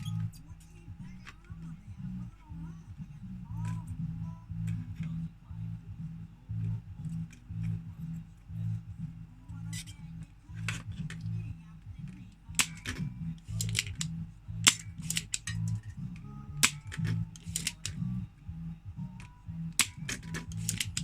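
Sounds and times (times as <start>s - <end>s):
background music with pulsing bass: 0.0s - 21.0s
hand tools clicking and snapping: 12.6s - 15.8s, 16.6s - 18.0s, 19.8s - 21.0s.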